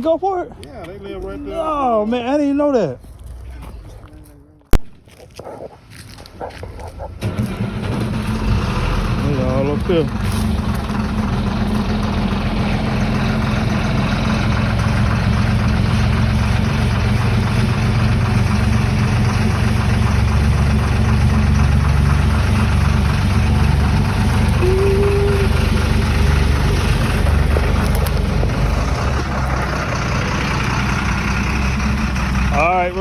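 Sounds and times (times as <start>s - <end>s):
engine idling with ticking: 7.1s - 33.0s.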